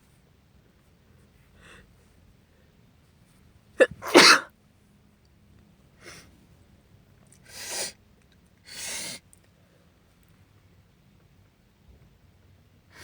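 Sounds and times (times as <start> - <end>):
congested sniffing: 3.8 - 4.5
woman sneezing: 3.8 - 4.5.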